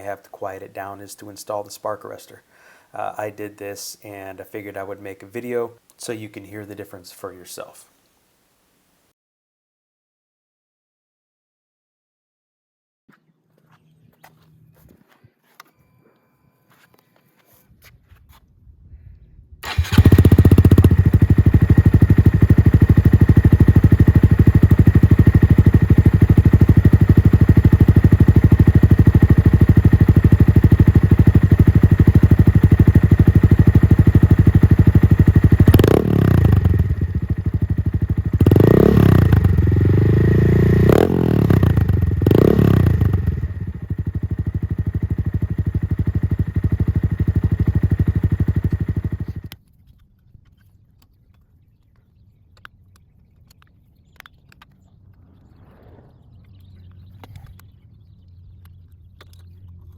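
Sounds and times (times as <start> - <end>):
motorcycle engine idling and revving: 19.6 - 49.6.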